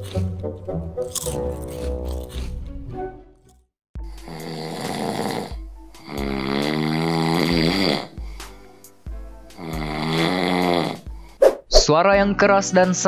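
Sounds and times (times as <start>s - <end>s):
background music with bass line: 4.0s - 11.4s, 12.0s - 13.0s
person snoring: 4.1s - 8.8s, 9.5s - 11.4s.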